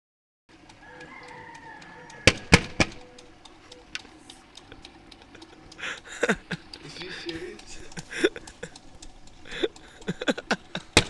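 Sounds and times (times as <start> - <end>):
faint scattered ticking: 0.5 - 11.0
sharp bangs: 2.3 - 3.0.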